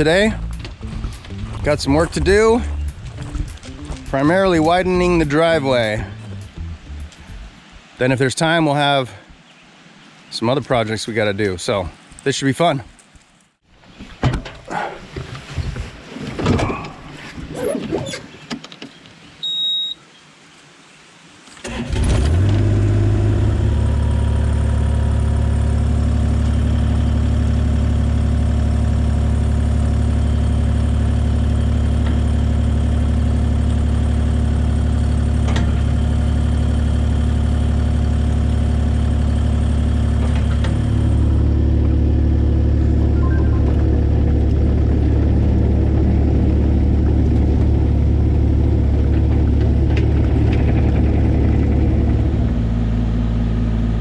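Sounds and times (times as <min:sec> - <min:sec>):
knocks and clicks: 0:00.0 - 0:07.9
diesel engine running: 0:00.0 - 0:08.0, 0:21.8 - 0:54.0
short high beep: 0:19.4 - 0:20.0, 0:43.0 - 0:44.0.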